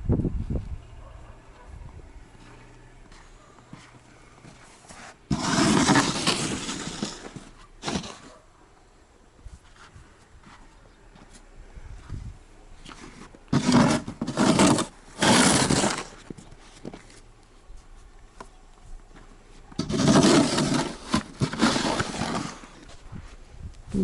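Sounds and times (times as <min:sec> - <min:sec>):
snow shovel scraping snow: 0:03.7 - 0:08.4, 0:12.9 - 0:17.2, 0:19.7 - 0:23.1.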